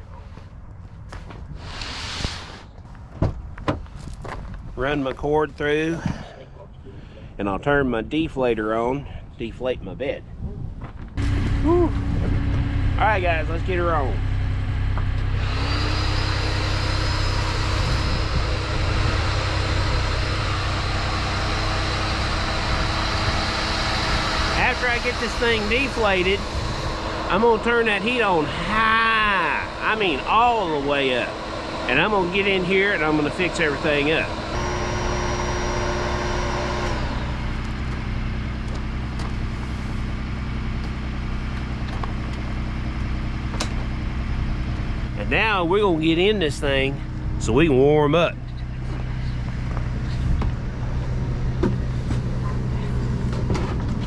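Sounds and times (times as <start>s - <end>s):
electric air pump whirring: 1.6s - 2.7s, 15.0s - 40.2s
vehicle engine idling: 11.2s - 54.0s.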